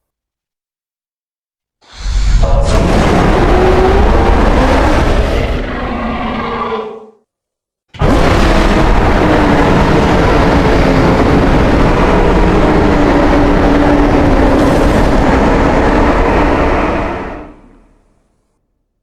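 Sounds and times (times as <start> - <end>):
monster roar: 1.8 - 7.2, 8.0 - 17.8.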